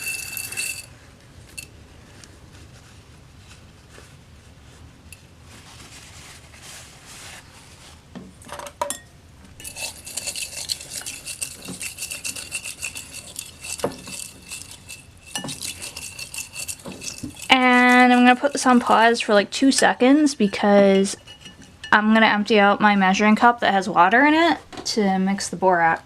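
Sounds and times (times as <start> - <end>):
utensil stirring in a bowl: 0.0 - 0.9, 9.6 - 21.9.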